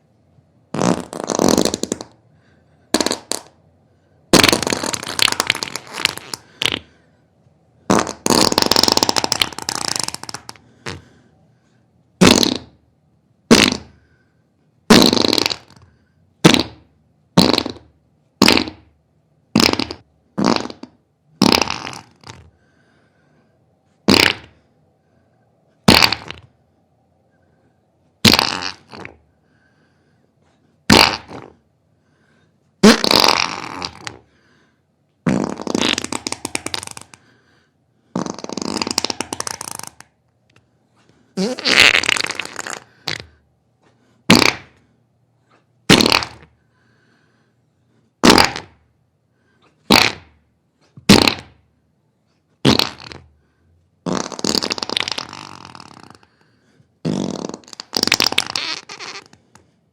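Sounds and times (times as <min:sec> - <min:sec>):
diarrhea fart sound effects: 0:00.7 - 0:02.3, 0:02.9 - 0:03.6, 0:04.3 - 0:07.0, 0:07.8 - 0:11.2, 0:12.2 - 0:12.8, 0:13.5 - 0:14.0, 0:14.9 - 0:22.5, 0:24.0 - 0:24.7, 0:25.8 - 0:26.6, 0:28.2 - 0:29.2, 0:30.9 - 0:31.6, 0:32.8 - 0:34.4, 0:35.2 - 0:37.3, 0:38.0 - 0:40.1, 0:41.4 - 0:43.4, 0:44.2 - 0:44.9, 0:45.5 - 0:46.6, 0:48.2 - 0:48.9, 0:49.8 - 0:51.6, 0:52.6 - 0:53.3, 0:54.0 - 0:56.4, 0:57.0 - 0:59.8.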